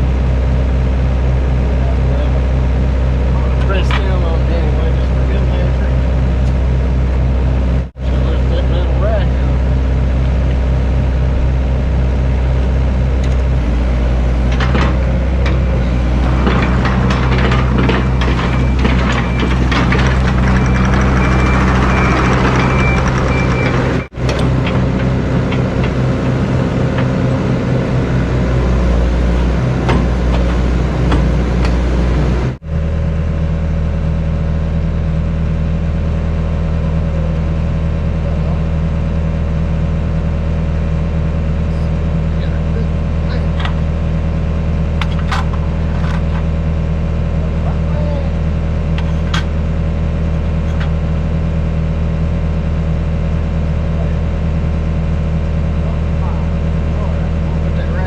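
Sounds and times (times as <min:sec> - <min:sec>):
excavator diesel engine running: 0:00.0 - 0:58.0
machine clanks and scrapes: 0:14.0 - 0:32.6, 0:45.0 - 0:46.5, 0:49.0 - 0:49.5, 0:50.4 - 0:51.0.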